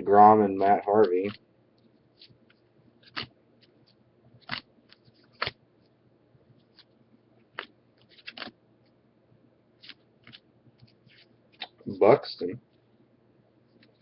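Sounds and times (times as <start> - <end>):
cards snapping as flipped: 3.0 - 3.8, 4.4 - 5.6, 7.5 - 8.6, 9.8 - 11.8.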